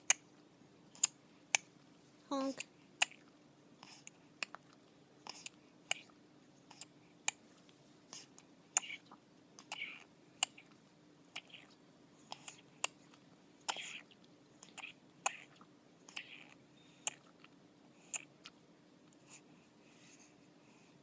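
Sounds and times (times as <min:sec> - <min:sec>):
baby sucking on a bottle: 0:11.4 - 0:18.5.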